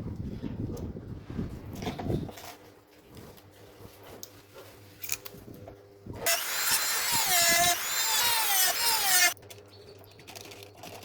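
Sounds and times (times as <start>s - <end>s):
electric power tool whining: 6.2s - 9.4s.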